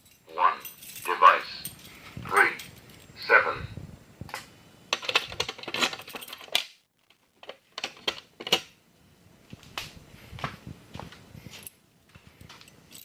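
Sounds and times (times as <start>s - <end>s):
scattered clicks and knocks: 4.3s - 8.8s.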